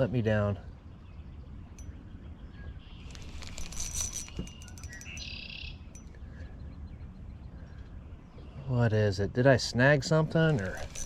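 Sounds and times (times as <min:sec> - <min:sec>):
birds chirping: 0:00.8 - 0:08.6.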